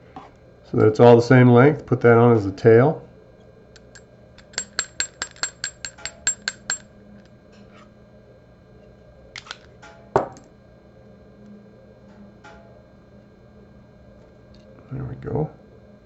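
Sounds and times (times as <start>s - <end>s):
hair stacker tapping on bench: 3.8s - 6.8s.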